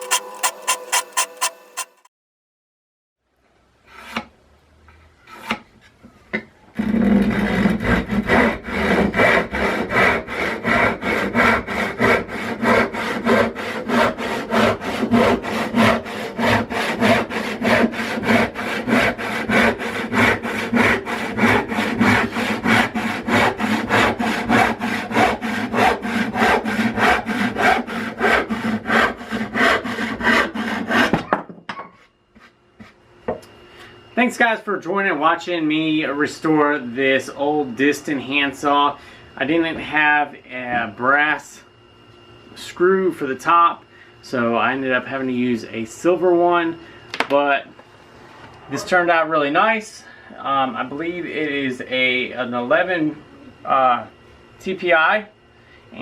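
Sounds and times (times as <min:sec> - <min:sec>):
hand saw cutting wood: 0:00.0 - 0:02.1, 0:07.0 - 0:31.2.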